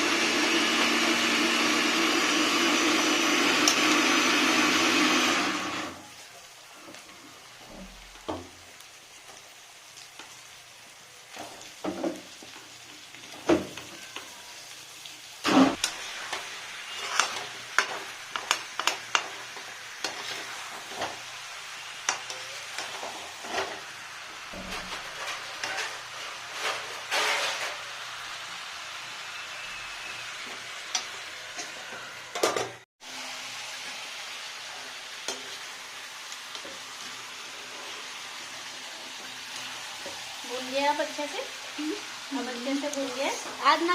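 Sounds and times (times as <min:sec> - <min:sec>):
chicken sizzling in a pan: 0:00.0 - 0:43.9
spoon scraping and knocking pan: 0:15.5 - 0:21.3, 0:24.5 - 0:27.8.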